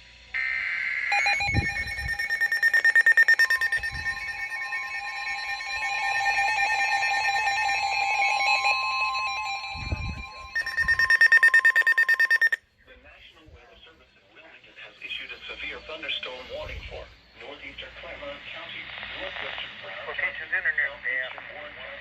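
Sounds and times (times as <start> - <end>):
buzzy digital data burst: 0.4 - 12.6
fast pulsing beeps: 1.1 - 12.6
steady alert tones: 1.1 - 12.6.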